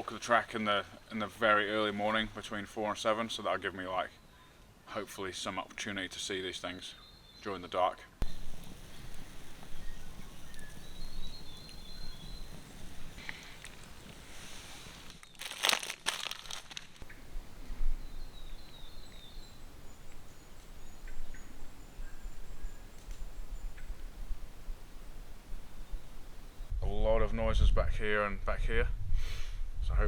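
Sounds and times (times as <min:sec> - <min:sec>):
high chirping calls: 0:08.2 - 0:14.3, 0:17.0 - 0:24.0
rustling crunch in undergrowth: 0:08.2 - 0:24.0.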